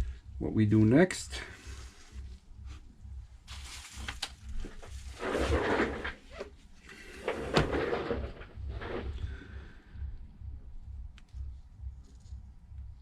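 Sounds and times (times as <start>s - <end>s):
steady low hum: 0.0s - 13.0s
scraping: 3.5s - 9.6s.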